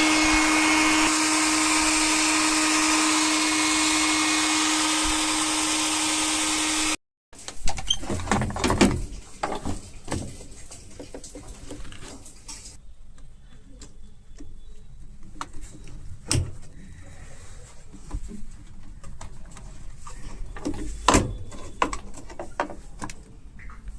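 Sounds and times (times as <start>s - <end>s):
whirring motor: 0.0s - 7.0s.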